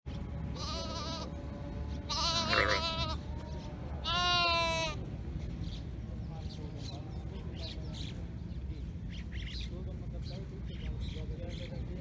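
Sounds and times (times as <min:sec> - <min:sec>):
low background rumble: 0:00.1 - 0:12.0
sheep bleating: 0:00.5 - 0:01.3, 0:02.0 - 0:03.3, 0:04.0 - 0:05.0.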